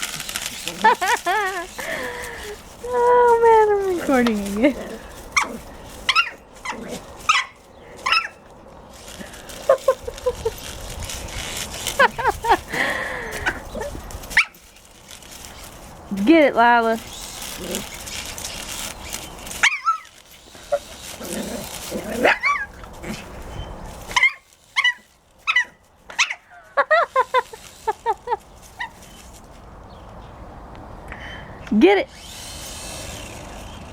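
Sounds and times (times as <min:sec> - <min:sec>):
dog whining: 0:03.9 - 0:08.4, 0:19.5 - 0:26.5
dog yipping: 0:05.3 - 0:08.4, 0:14.3 - 0:14.6, 0:19.5 - 0:20.9, 0:22.2 - 0:22.8, 0:24.1 - 0:26.5, 0:28.8 - 0:29.2.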